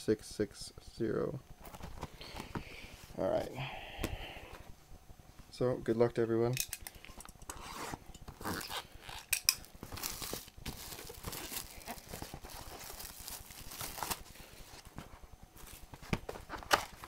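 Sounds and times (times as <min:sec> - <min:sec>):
plastic shrink wrap tearing: 0:07.6 - 0:14.3.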